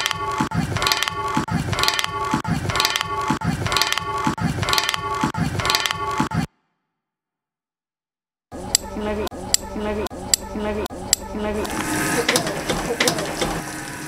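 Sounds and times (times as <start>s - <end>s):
looped electronic beat: 0.0s - 6.5s.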